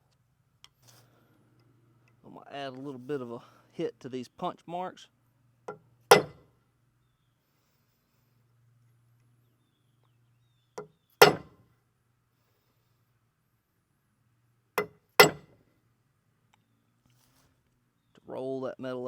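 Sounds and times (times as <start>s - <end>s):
hammer tapping metal punch: 5.7s - 6.4s, 10.8s - 11.6s, 14.8s - 15.5s
hammer striking metal: 6.1s - 6.4s, 11.2s - 11.6s, 14.8s - 15.5s.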